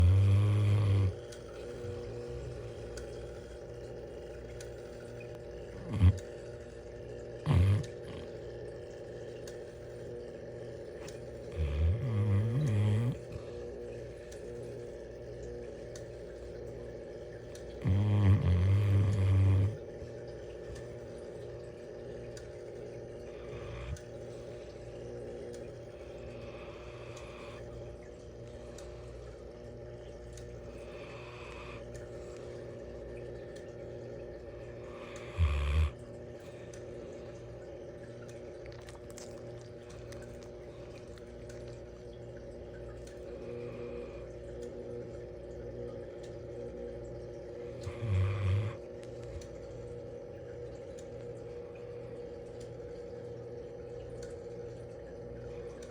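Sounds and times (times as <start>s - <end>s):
dog snorting loudly: 0.0s - 1.2s, 5.7s - 6.3s, 7.4s - 8.4s, 11.5s - 13.5s, 17.8s - 19.8s, 35.2s - 36.0s, 47.8s - 48.8s
steady low hum: 0.0s - 55.9s.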